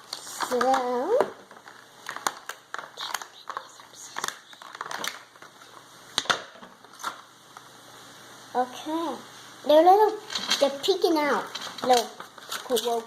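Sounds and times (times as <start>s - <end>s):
plastic packaging crackling: 0.0s - 7.3s, 10.3s - 13.0s.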